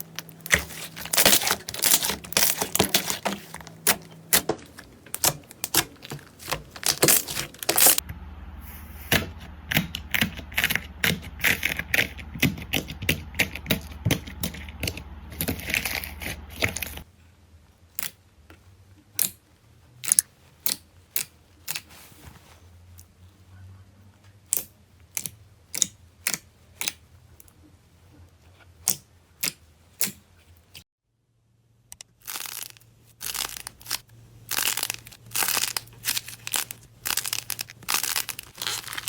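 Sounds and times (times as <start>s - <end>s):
slime popping and crackling: 0.0s - 8.0s, 32.2s - 39.0s
low background hum: 0.0s - 39.0s.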